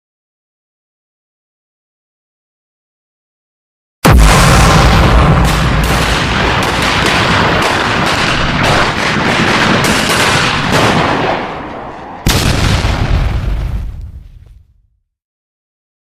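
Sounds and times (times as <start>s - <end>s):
rumbling explosion: 4.0s - 14.9s
gunfire cracks: 4.1s - 14.3s.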